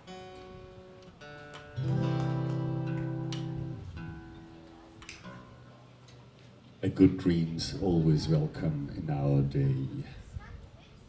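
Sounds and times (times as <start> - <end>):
baritone guitar playing: 0.2 - 4.9.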